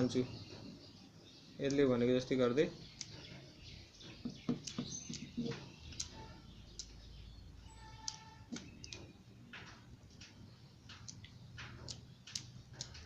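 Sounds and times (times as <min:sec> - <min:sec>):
plastic puzzle clicking: 0:08.0 - 0:09.0.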